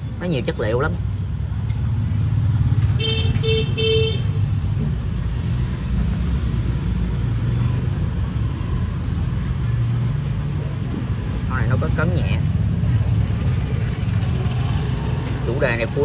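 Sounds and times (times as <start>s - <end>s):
road traffic rumble: 0.0s - 16.0s
vehicle horn beeping: 3.0s - 4.4s.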